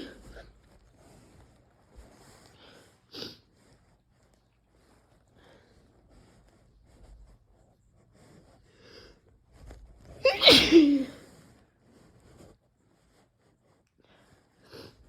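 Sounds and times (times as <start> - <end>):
faint breaths and sniffs: 0.0 - 15.0
person sneezing: 10.2 - 11.2.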